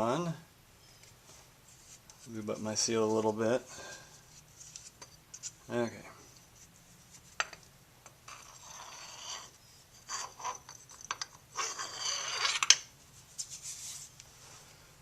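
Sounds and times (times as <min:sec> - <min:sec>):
rubbing and scraping: 0:08.3 - 0:10.8, 0:11.5 - 0:14.2.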